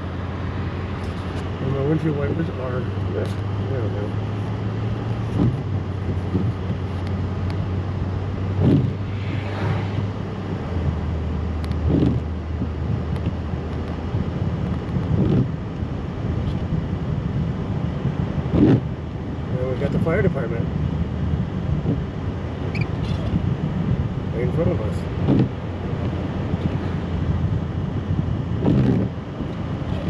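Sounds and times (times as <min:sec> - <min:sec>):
tyre noise on slushy road: 0:00.0 - 0:16.8
truck engine hum: 0:00.0 - 0:30.0
windshield wipers sweeping: 0:00.5 - 0:15.6, 0:21.6 - 0:30.0.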